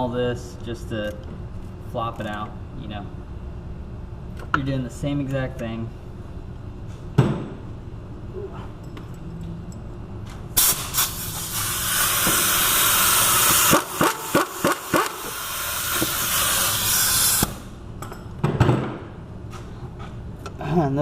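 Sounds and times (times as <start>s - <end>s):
pressurised air hissing: 10.6s - 17.7s.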